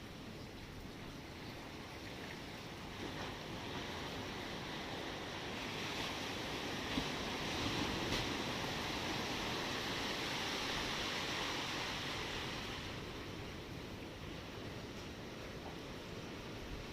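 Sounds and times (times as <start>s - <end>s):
ocean waves washing: 0.0s - 16.9s.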